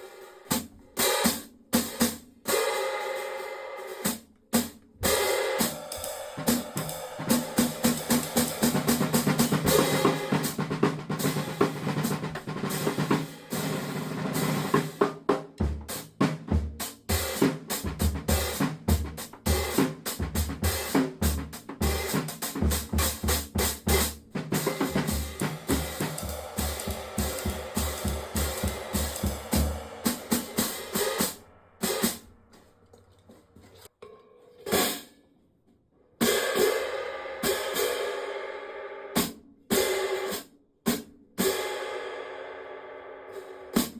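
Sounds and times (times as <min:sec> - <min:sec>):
bass drum beats: 0:06.0 - 0:13.2, 0:14.7 - 0:32.6
snare drum hits: 0:17.2 - 0:32.3.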